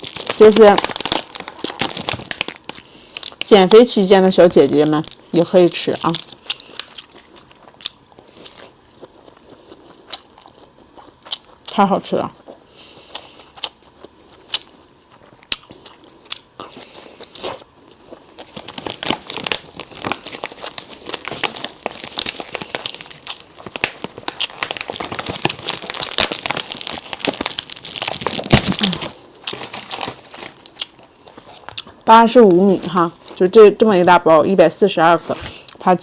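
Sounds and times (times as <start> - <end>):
eating crab sticks: 4.8 - 11.8, 12.4 - 32.0.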